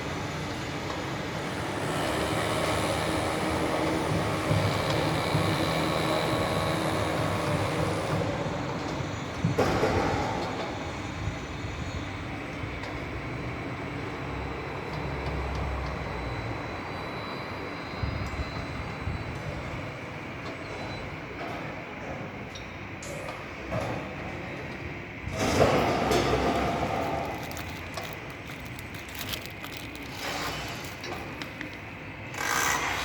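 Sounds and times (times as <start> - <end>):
vehicle rumbling: 25.3 - 32.1.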